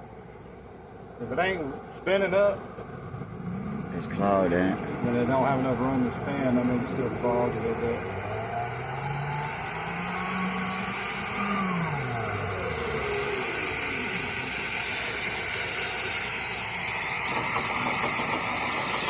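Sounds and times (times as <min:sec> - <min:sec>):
vent brush motor spinning: 0:03.1 - 0:19.0.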